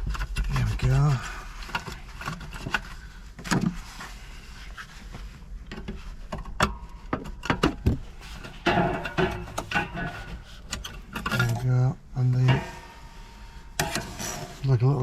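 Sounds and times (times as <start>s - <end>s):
metal scraping: 7.7s - 15.0s.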